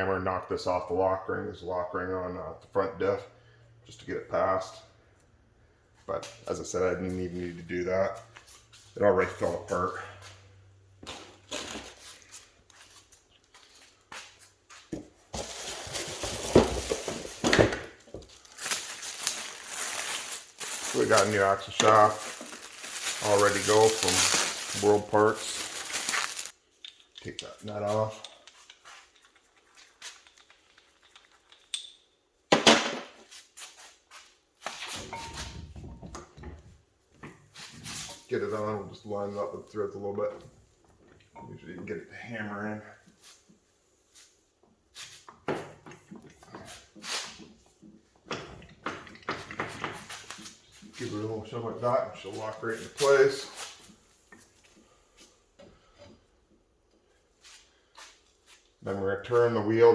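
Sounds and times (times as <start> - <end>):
parts rustling and clattering: 11.0 - 32.0, 45.0 - 51.2.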